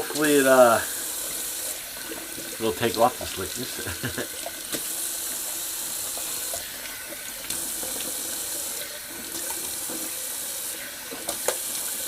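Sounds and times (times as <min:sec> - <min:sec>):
tap running into sink: 0:11.1 - 0:11.9.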